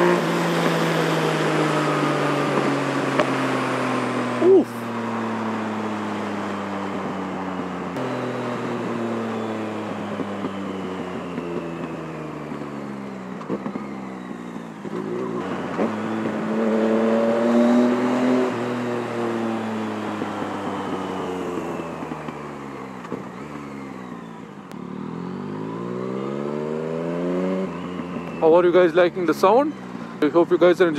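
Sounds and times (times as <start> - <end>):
motorcycle engine revving: 0.0 - 30.9.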